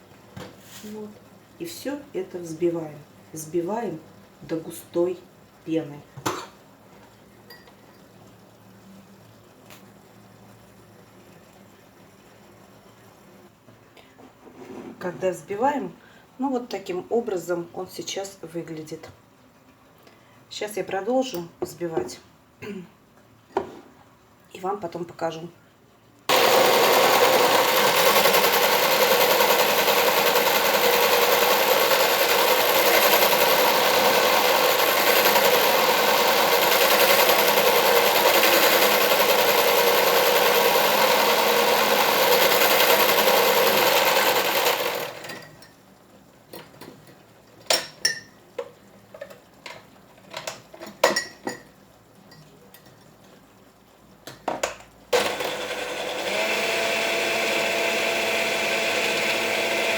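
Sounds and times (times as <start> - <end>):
electric mixer running: 26.3 - 45.4, 55.2 - 59.9.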